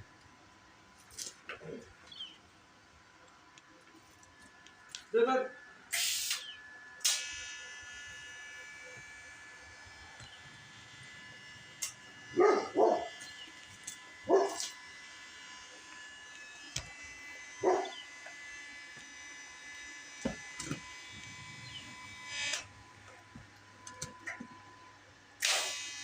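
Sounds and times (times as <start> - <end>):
dog barking: 12.4 - 13.2, 14.3 - 14.8, 17.6 - 18.0.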